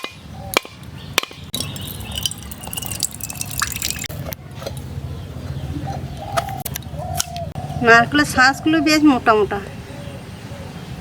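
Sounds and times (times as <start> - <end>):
coconut being struck: 0.0 - 4.0
coconut water splashing: 1.6 - 4.2.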